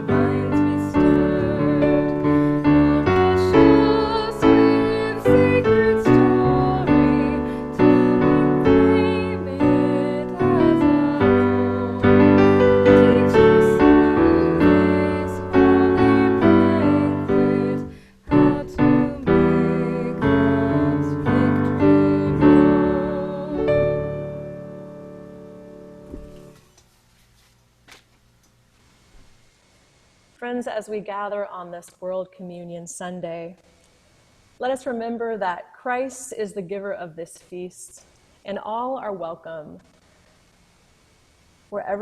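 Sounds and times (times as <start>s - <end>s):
slow piano music: 0.0s - 26.6s.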